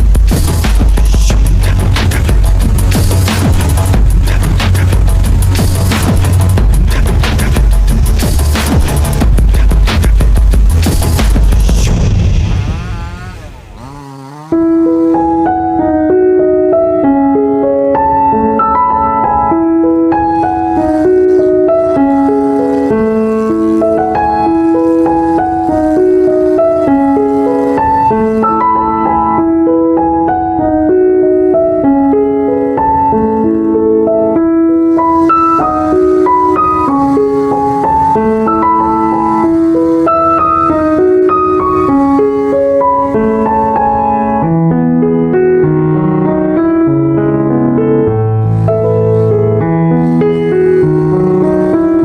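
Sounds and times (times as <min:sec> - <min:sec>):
gentle piano melody: 0:14.5 - 0:52.0.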